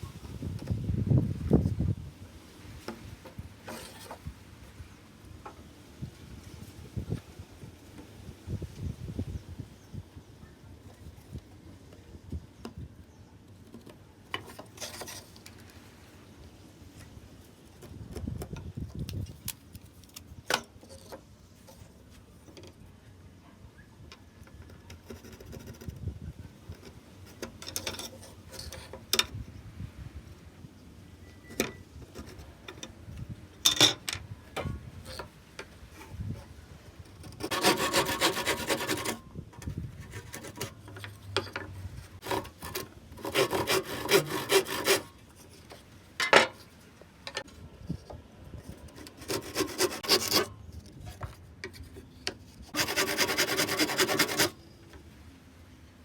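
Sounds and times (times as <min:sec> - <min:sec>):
rasping scraping on wood: 0:37.3 - 0:39.2, 0:40.0 - 0:40.8, 0:42.2 - 0:45.1, 0:49.0 - 0:50.5, 0:52.7 - 0:54.6.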